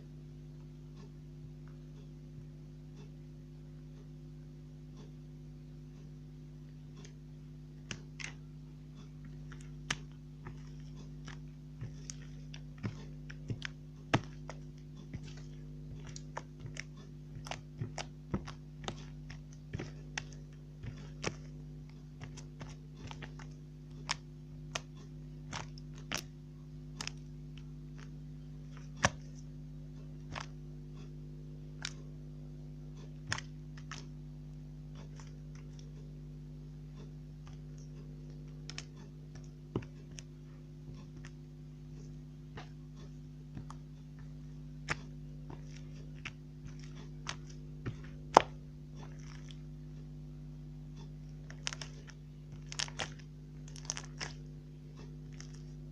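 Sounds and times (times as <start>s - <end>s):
steady low hum: 0.0s - 55.9s
slime clicking and popping: 9.5s - 21.5s, 22.2s - 26.3s, 27.0s - 27.3s, 30.3s - 30.5s, 51.4s - 54.4s.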